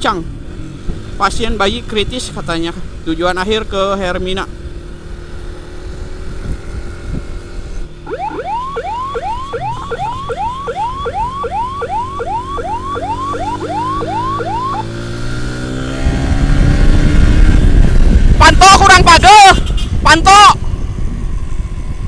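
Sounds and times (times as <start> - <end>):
emergency siren yelping: 8.0 - 14.9.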